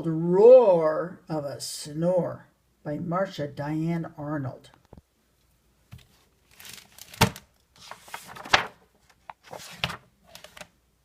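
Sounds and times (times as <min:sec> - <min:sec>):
book pages rustling: 0:05.9 - 0:10.8.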